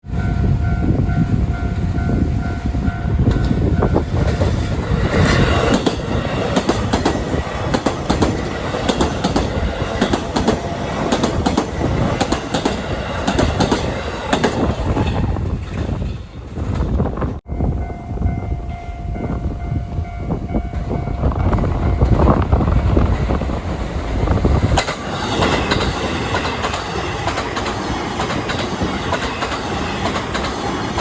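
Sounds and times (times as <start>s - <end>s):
train rumble: 0.0s - 31.0s
train wheels clattering over joints: 3.2s - 17.2s, 22.0s - 31.0s.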